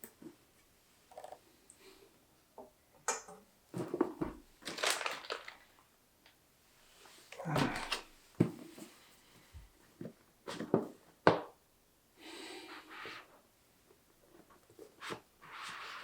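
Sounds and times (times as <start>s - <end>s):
packaging rustling: 4.2s - 5.8s, 7.4s - 8.2s.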